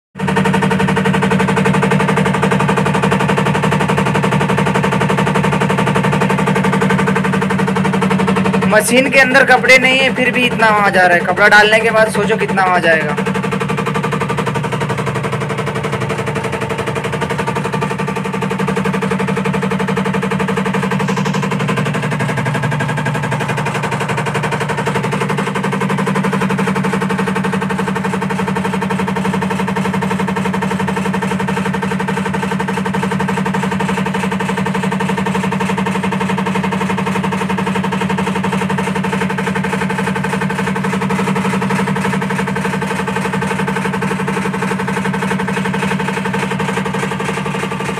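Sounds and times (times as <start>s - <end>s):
washing machine mechanical noise: 0.2s - 47.9s.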